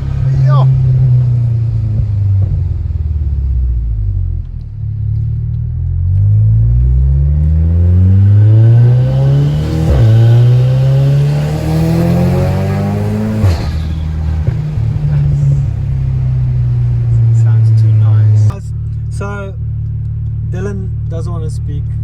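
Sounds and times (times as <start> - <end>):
car engine accelerating hard: 0.0 - 22.0.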